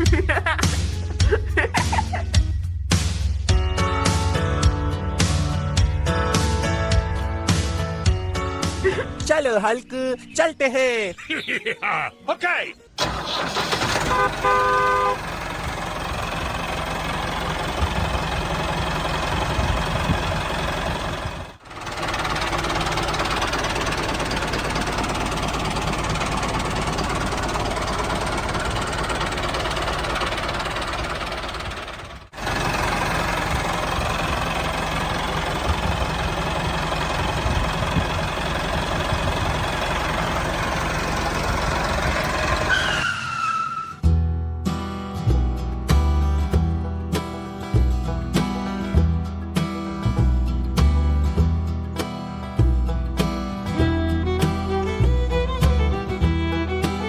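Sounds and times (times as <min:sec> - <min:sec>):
tractor engine running: 0:12.4 - 0:44.2, 0:45.3 - 0:57.0.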